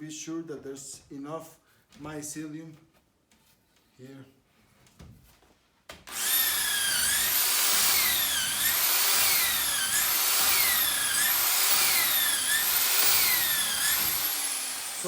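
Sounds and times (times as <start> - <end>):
power drill whining: 6.1 - 15.0.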